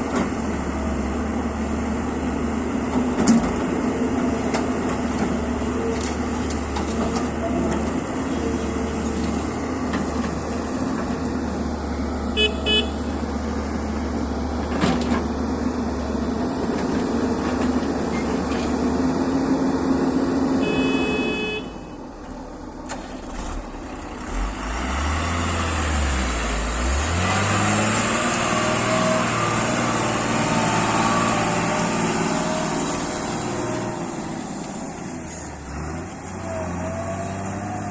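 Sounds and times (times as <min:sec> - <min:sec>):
heavy diesel engines running: 0:00.0 - 0:37.9
horn toots: 0:12.4 - 0:13.1, 0:20.6 - 0:22.0
engine revving under load: 0:23.2 - 0:37.9.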